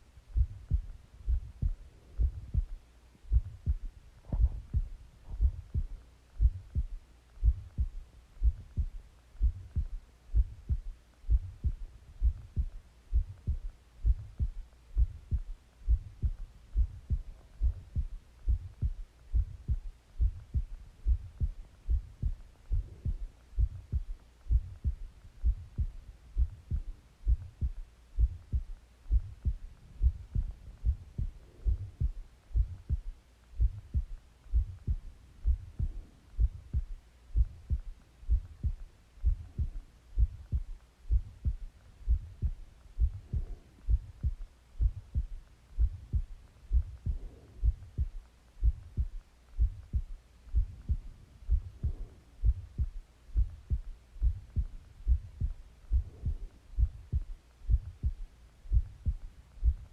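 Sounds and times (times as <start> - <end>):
heartbeat thumps: 0.0 - 59.9.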